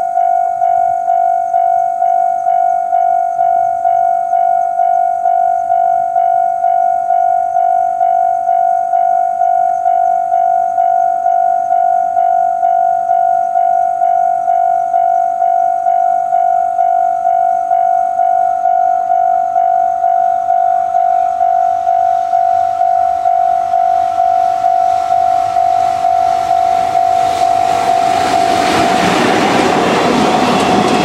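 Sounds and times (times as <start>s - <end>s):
level-crossing warning bell: 0.0s - 31.0s
freight train rumble: 22.5s - 31.0s.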